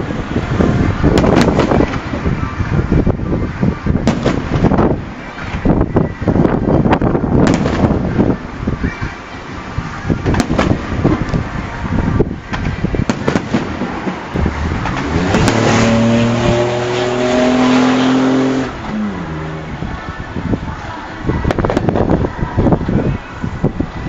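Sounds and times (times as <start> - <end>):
fireworks bangs and crackles: 0.0 - 18.0, 21.4 - 22.9
motor engine revving: 13.2 - 20.0.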